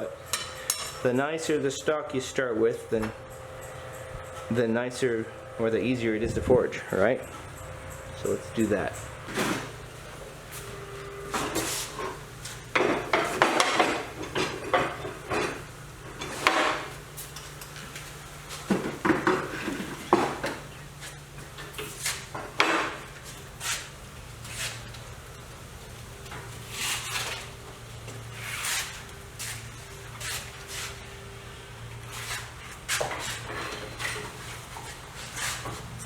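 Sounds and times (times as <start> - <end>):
metal clanks of steel and tools: 0.2 - 1.2.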